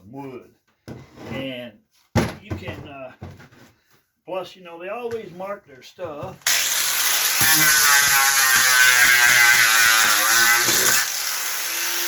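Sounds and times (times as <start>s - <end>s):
angle grinder sanding wood: 6.5s - 12.0s.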